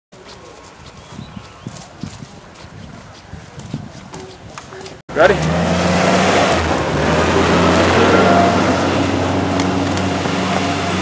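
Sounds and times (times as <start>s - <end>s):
engine humming: 4.7s - 11.0s
loud rushing noise: 5.1s - 11.0s.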